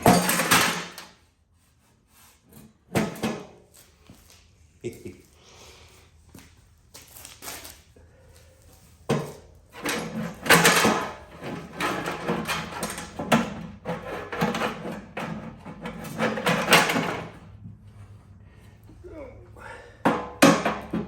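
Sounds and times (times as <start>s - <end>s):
metal clattering and scraping: 0.0s - 1.3s, 9.1s - 18.4s.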